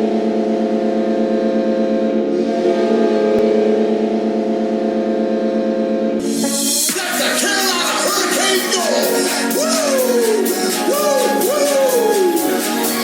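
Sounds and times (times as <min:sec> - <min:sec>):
arena goal horn blast: 0:00.0 - 0:09.2.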